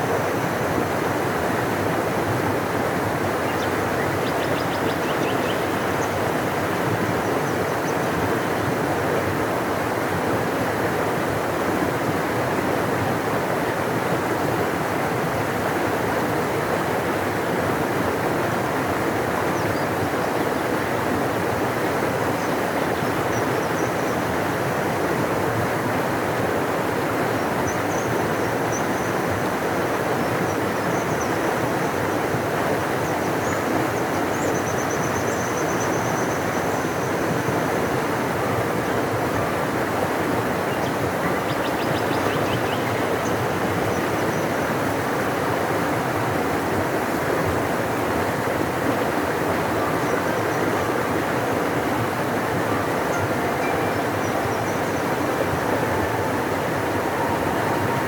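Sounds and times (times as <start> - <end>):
river rushing: 0.0 - 58.0.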